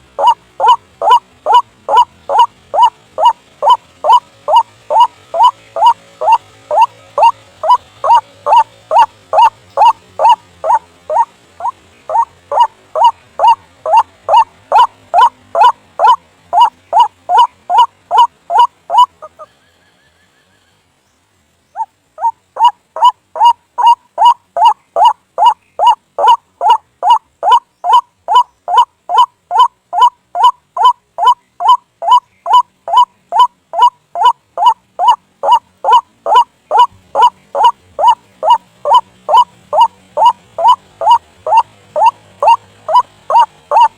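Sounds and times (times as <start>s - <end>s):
waterhen calling: 0.0s - 19.6s, 21.6s - 43.9s.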